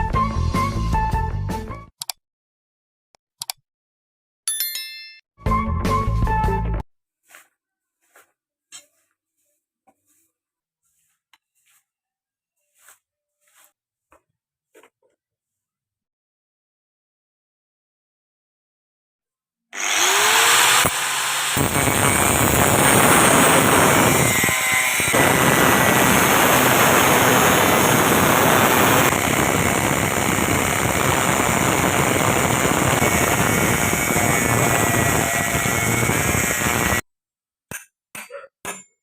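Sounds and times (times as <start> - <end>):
short clicks: 2.0 - 2.2, 3.4 - 3.6
machine running loudly: 19.8 - 37.0.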